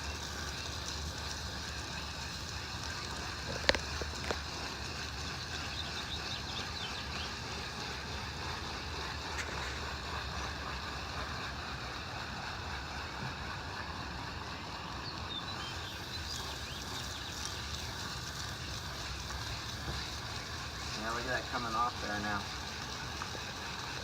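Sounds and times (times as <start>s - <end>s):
hose spraying water: 0.0s - 24.0s.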